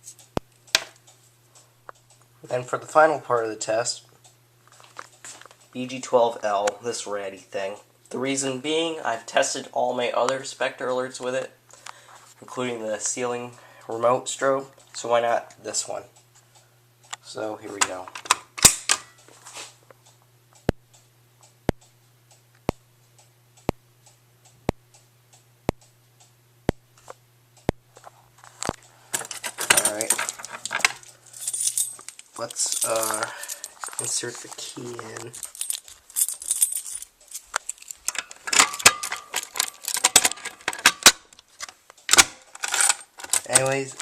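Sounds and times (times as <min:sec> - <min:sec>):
steady low hum: 0:00.0 - 0:44.0
fainter ticks: 0:00.1 - 0:02.4, 0:19.2 - 0:29.0
strobe ticking: 0:00.2 - 0:02.4, 0:19.8 - 0:29.0
keys jangling: 0:29.2 - 0:34.2, 0:35.0 - 0:40.8.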